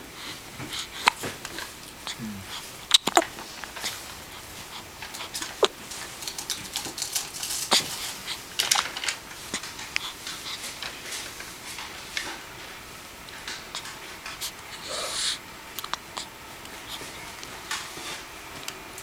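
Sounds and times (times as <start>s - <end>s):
breathy snuffles: 13.8s - 17.2s.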